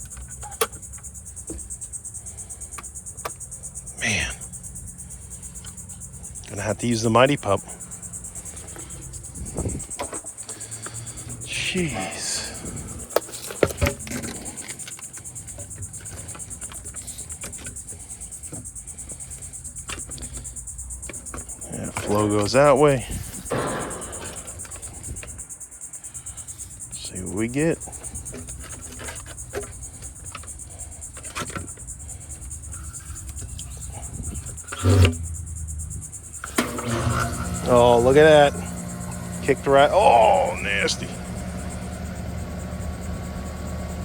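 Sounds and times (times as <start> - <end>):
insects chirring: 0.0 - 44.0
faint knocks: 23.4 - 25.3.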